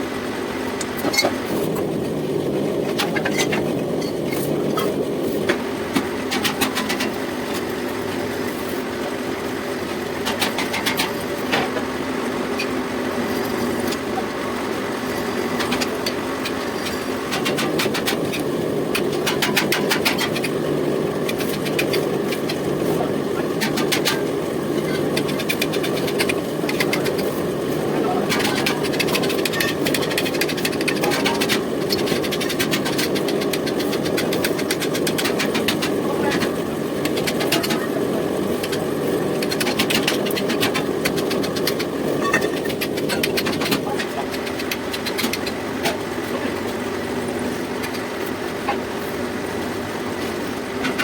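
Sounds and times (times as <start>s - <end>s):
sharp clicking and scraping: 10.2s - 11.8s, 15.1s - 46.8s, 47.6s - 48.9s.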